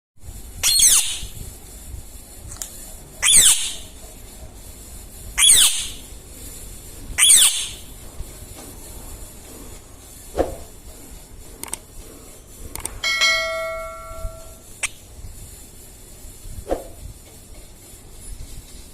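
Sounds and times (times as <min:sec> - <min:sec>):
parrot screeching: 0:00.6 - 0:01.3, 0:03.2 - 0:03.8, 0:05.4 - 0:06.0, 0:07.2 - 0:07.8
short ringing tone: 0:13.0 - 0:14.6.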